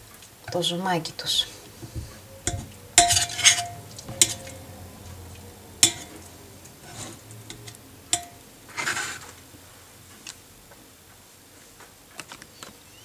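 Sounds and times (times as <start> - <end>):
spoon scraping pot: 1.4 - 4.8, 5.8 - 9.4
spoon knocking against pot: 1.8 - 4.7, 5.8 - 6.3, 6.9 - 8.4.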